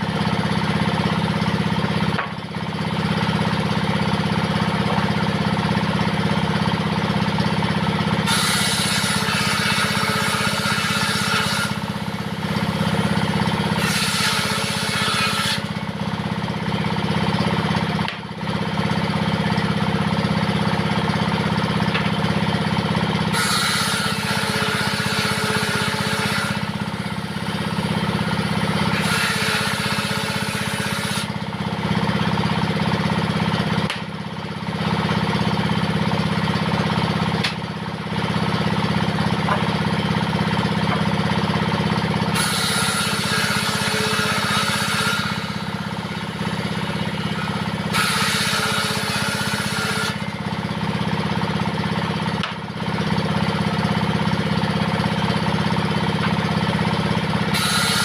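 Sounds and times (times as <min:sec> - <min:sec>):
diesel engine running: 0:00.0 - 0:08.3, 0:11.7 - 0:13.8, 0:15.6 - 0:23.4, 0:26.6 - 0:29.0, 0:31.3 - 0:42.4, 0:43.2 - 0:58.0
saw blade ripping through wood: 0:08.2 - 0:12.0, 0:13.6 - 0:15.8, 0:23.3 - 0:26.8, 0:28.8 - 0:31.3, 0:42.3 - 0:50.3, 0:57.4 - 0:58.0.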